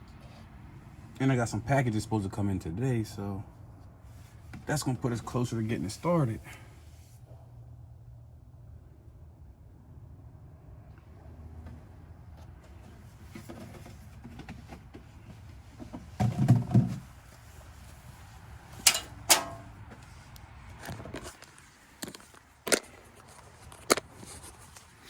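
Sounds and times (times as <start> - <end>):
sharp metallic clicks and knocks: 18.8 - 19.8.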